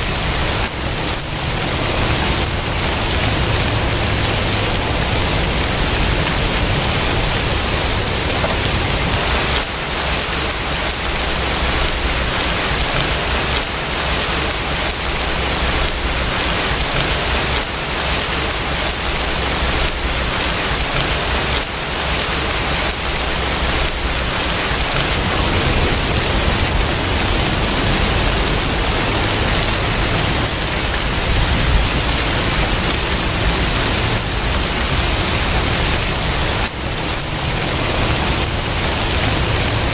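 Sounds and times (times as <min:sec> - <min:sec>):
heavy rain: 0:00.0 - 0:39.9
low rumble: 0:23.5 - 0:39.9.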